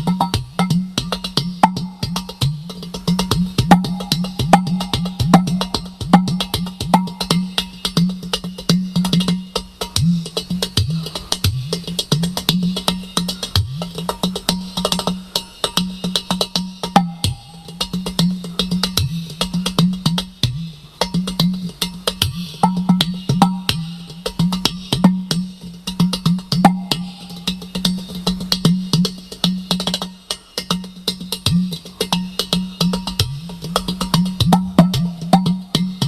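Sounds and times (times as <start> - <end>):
clay pot drum rhythm: 0.0 - 36.0.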